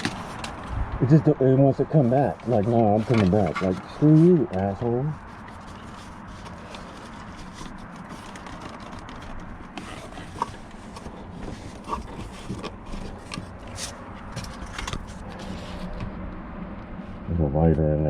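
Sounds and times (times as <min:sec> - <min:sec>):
low background noise: 0:00.0 - 0:18.0.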